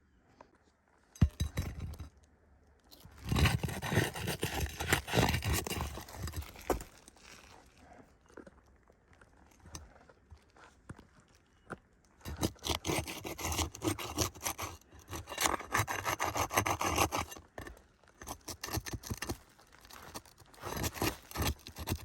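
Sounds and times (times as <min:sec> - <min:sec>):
roof shingle crunching and scraping: 0:03.0 - 0:07.8, 0:12.2 - 0:22.0.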